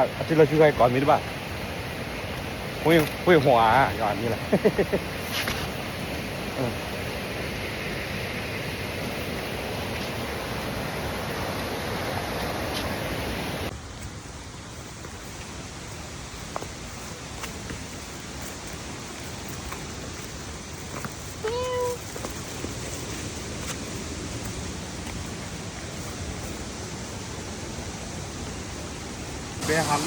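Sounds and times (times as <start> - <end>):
waterfall rushing: 23.8 - 30.0.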